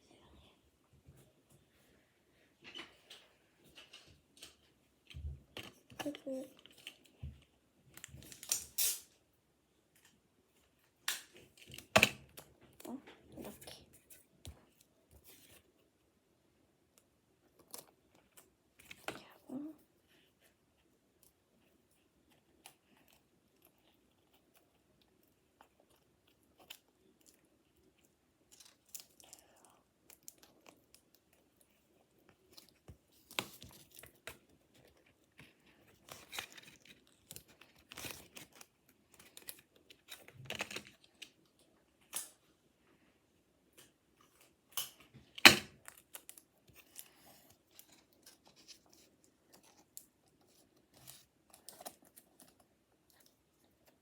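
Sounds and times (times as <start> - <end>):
paper and cardboard crinkling: 30.2 - 42.1, 45.0 - 54.0.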